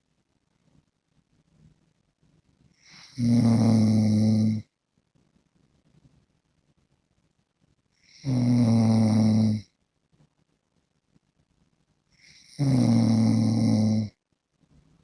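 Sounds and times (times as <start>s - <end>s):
man snoring: 2.9s - 4.7s, 8.1s - 9.7s, 12.2s - 14.2s.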